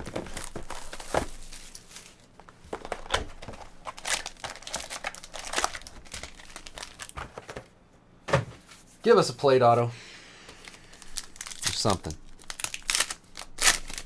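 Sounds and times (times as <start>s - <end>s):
plastic wrapping crinkling and tearing: 0.0s - 7.5s, 10.6s - 14.0s.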